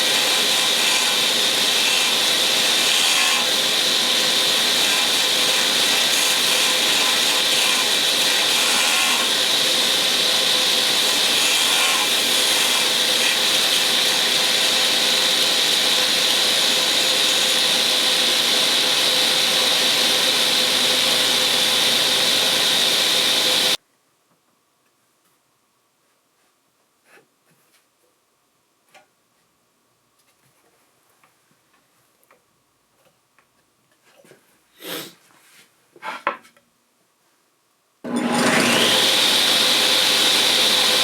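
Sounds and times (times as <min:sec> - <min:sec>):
table saw whining: 0:00.0 - 0:23.8, 0:38.1 - 0:41.0.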